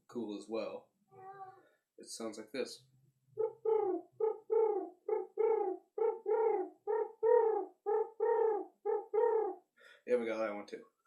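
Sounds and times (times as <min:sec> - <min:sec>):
person imitating dove cooing: 0:03.4 - 0:09.6.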